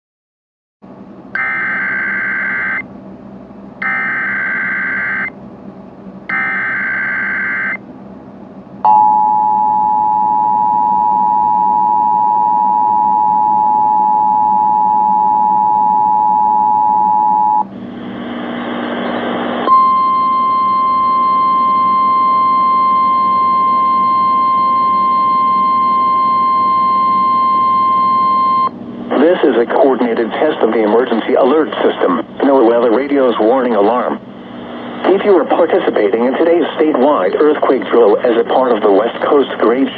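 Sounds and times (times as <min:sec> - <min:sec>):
two-tone attention signal: 0:01.4 - 0:02.8, 0:03.8 - 0:05.3, 0:06.3 - 0:07.8, 0:19.7 - 0:28.7
single-pitch warning alarm tone: 0:01.4 - 0:02.9, 0:03.8 - 0:05.4, 0:06.3 - 0:07.8, 0:08.8 - 0:17.6, 0:19.7 - 0:28.8.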